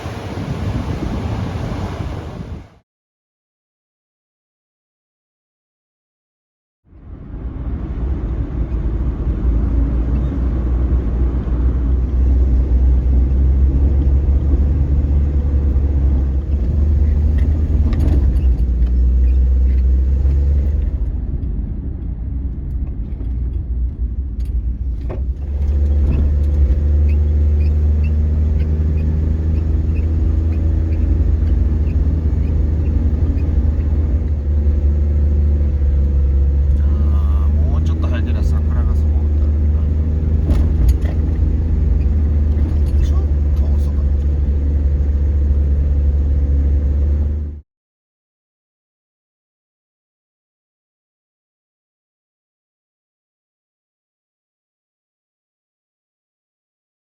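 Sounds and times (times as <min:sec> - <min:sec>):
car engine and road noise: 0:00.0 - 0:02.8, 0:06.8 - 0:47.6.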